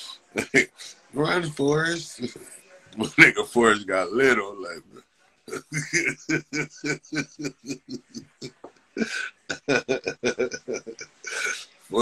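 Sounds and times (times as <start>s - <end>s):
man laughing in short chuckles: 9.0s - 11.5s.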